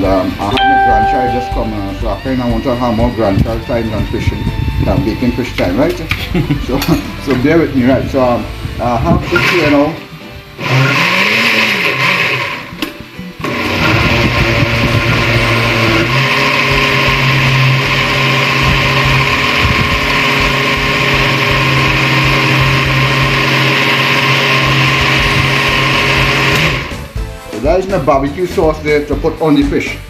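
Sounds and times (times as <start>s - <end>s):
electric blender motor: 9.2s - 27.1s.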